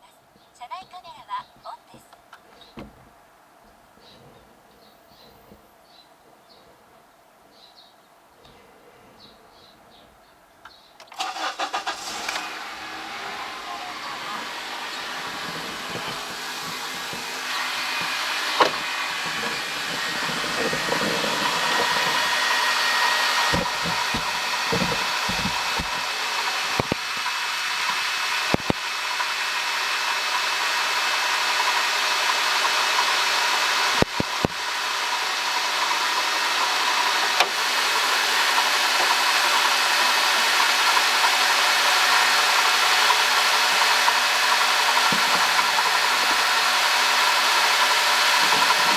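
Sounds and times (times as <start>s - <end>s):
car engine running: 11.2s - 48.9s
high-pitched whir: 11.2s - 48.9s
sharp clicks: 13.2s - 29.4s.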